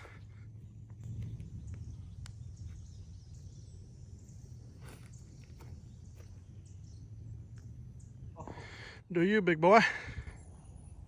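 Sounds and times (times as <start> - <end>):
steady low rumble: 0.0 - 9.2.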